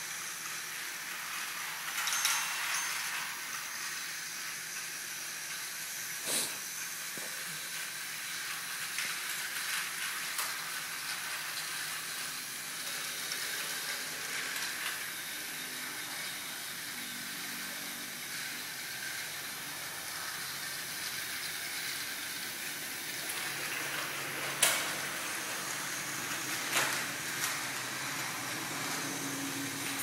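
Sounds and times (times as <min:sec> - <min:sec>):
steam hissing: 0:03.3 - 0:09.3.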